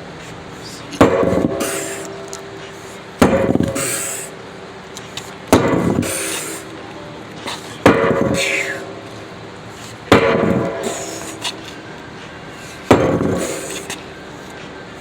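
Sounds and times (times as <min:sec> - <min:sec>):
heavy hammer blows: 0:00.9 - 0:04.4, 0:05.1 - 0:06.8, 0:07.4 - 0:15.0.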